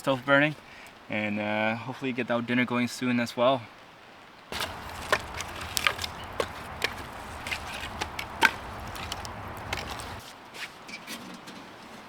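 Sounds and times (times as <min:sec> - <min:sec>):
firewood snapping and knocking: 0:04.6 - 0:10.2.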